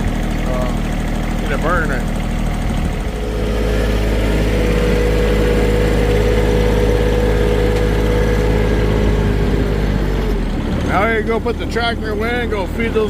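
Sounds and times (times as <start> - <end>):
vehicle engine whining: 0.0 - 13.0.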